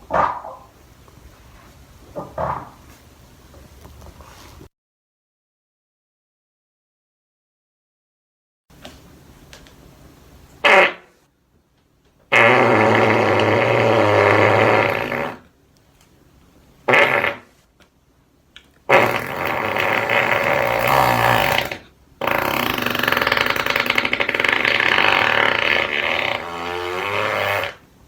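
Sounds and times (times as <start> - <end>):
long buzzing farts: 10.6 - 11.2, 12.3 - 15.5, 16.8 - 17.6, 18.9 - 27.8.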